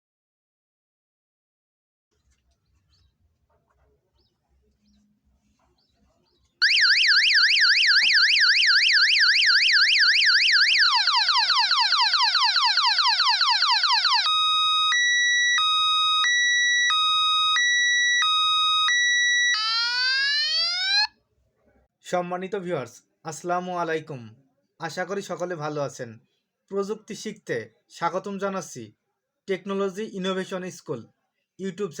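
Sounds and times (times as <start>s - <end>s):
electronic alarm siren: 6.6s - 21.1s.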